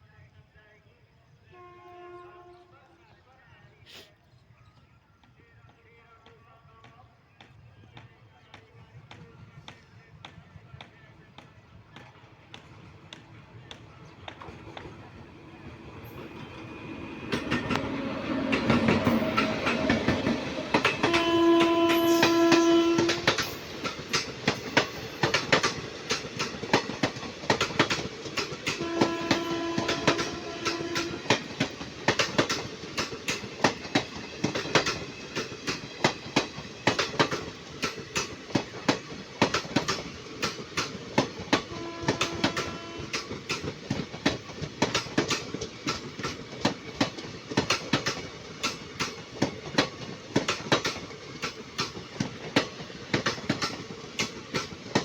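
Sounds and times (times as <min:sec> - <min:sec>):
train horn: 0:01.5 - 0:02.9, 0:20.8 - 0:23.6, 0:28.7 - 0:31.6, 0:41.6 - 0:43.3
train wheels clattering on rails: 0:05.2 - 0:55.0.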